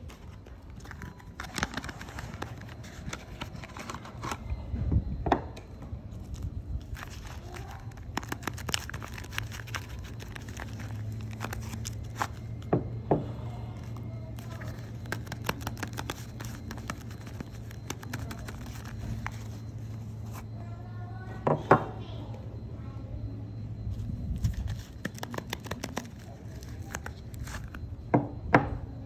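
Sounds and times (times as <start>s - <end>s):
packaging crinkling: 0.0s - 4.4s, 6.2s - 12.5s, 13.8s - 20.4s, 24.4s - 27.8s.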